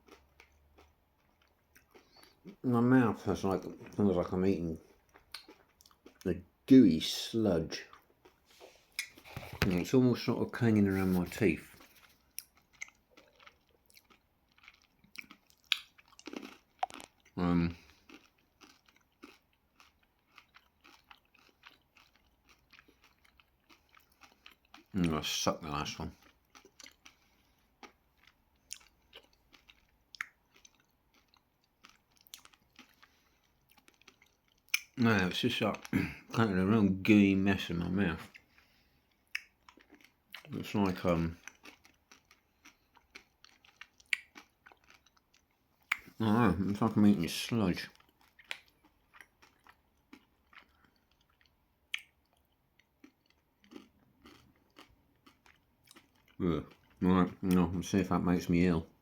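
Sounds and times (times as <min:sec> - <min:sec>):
person chewing with wet mouth clicks: 0:05.1 - 0:06.2, 0:09.0 - 0:09.7, 0:11.7 - 0:24.9, 0:27.8 - 0:33.1, 0:33.7 - 0:35.0, 0:39.3 - 0:40.5, 0:41.4 - 0:46.2, 0:48.0 - 0:57.0.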